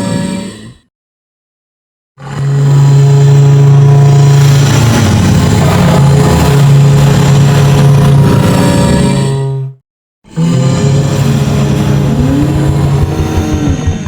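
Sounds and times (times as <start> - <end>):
monster roar: 10.3 - 14.0.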